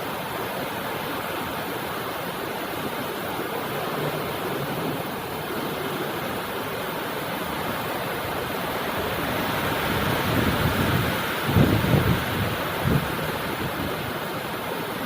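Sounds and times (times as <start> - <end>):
steady rainfall: 0.0 - 15.0.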